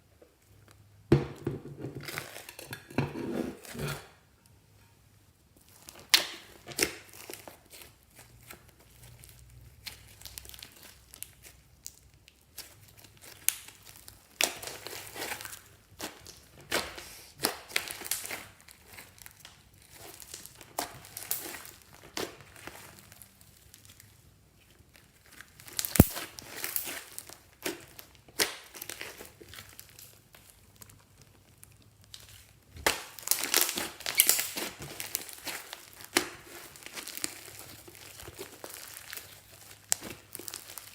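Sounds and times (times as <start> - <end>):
slime crinkling and crackling: 5.6 - 40.9
sharp snap: 25.9 - 26.2.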